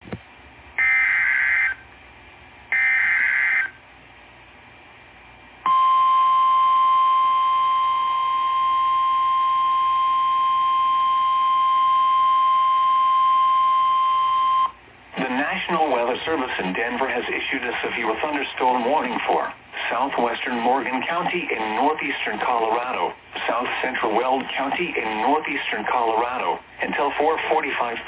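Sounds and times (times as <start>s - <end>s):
steady warning alarm tone: 2.7s - 3.8s, 5.7s - 16.2s.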